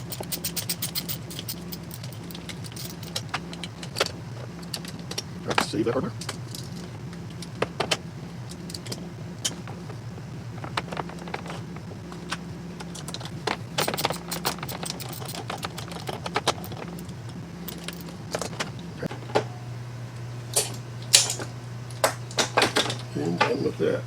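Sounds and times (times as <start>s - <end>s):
metal hardware clicking: 0.0s - 4.0s, 13.8s - 19.5s, 20.5s - 23.1s
steady low hum: 0.0s - 24.0s.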